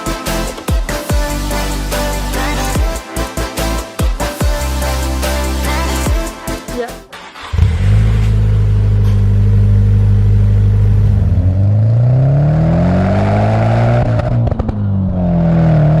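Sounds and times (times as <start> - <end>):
car engine revving: 7.1 - 16.0
exhaust cracks: 7.1 - 16.0.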